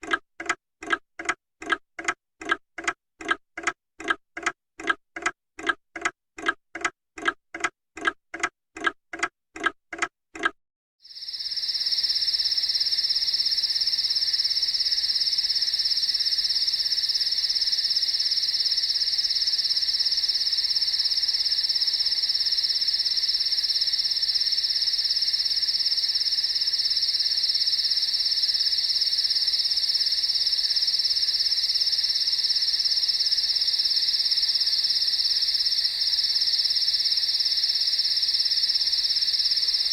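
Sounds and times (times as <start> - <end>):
clock ticking: 0.0 - 10.6
crickets chirping: 11.0 - 39.9.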